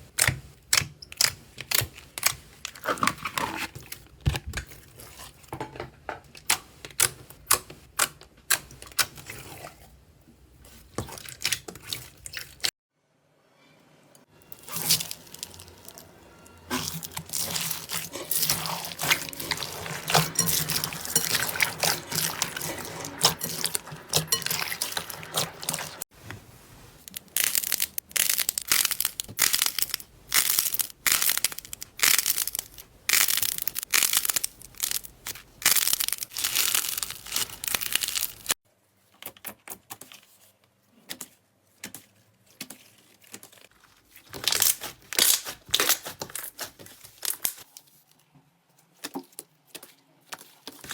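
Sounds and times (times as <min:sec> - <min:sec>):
slime crackling and popping: 0:14.6 - 0:16.1, 0:27.0 - 0:38.6, 0:44.3 - 0:47.6.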